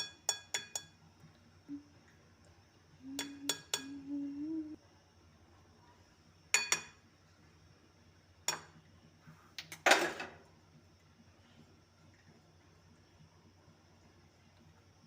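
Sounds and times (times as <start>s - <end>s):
dishes and utensils clinking: 6.6s - 7.0s.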